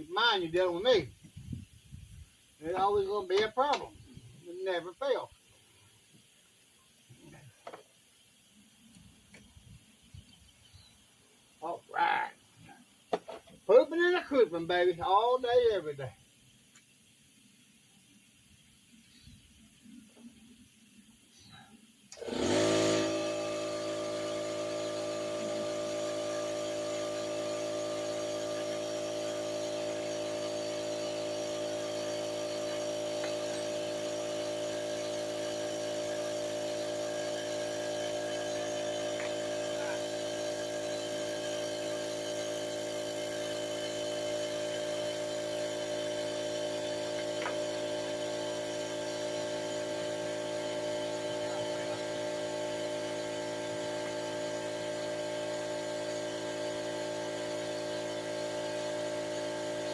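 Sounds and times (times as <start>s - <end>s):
steady machine hum: 19.1s - 59.9s.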